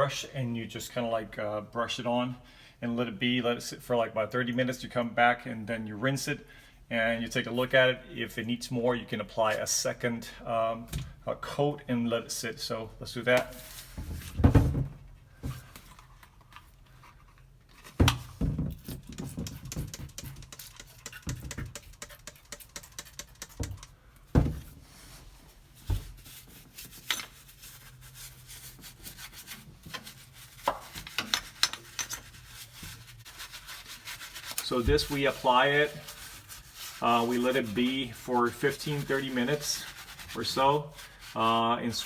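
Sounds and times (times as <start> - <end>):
brush scrubbing steel: 19.6 - 23.8, 24.9 - 42.0.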